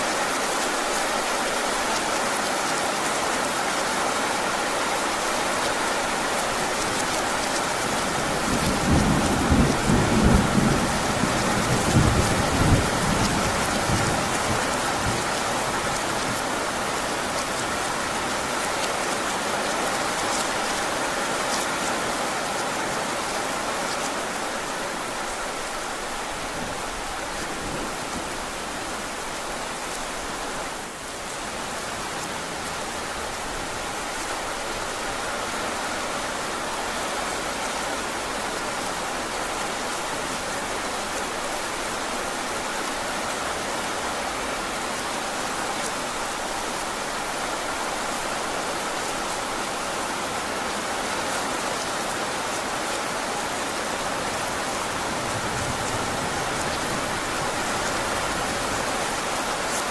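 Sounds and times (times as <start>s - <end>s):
heavy rain falling: 0.0s - 59.9s
low roll of thunder: 8.2s - 15.8s.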